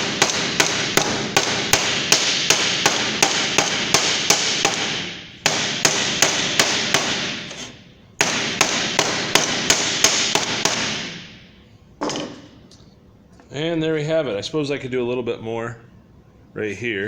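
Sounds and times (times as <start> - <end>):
hammer striking sheet metal: 0.0 - 11.5.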